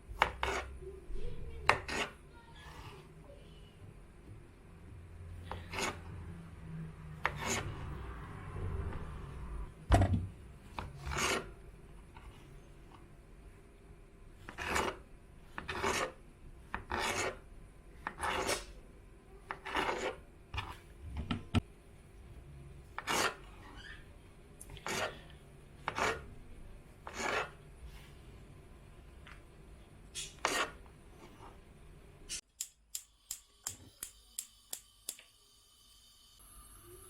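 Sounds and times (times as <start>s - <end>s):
rasping rubbing strokes: 27.1s - 27.6s.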